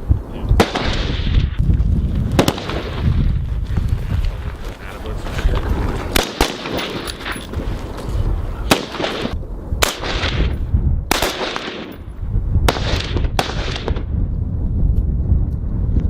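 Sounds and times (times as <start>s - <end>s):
rifle shots with echo: 0.6s - 1.6s, 2.3s - 3.2s, 6.1s - 7.4s, 8.6s - 12.1s, 12.7s - 14.1s.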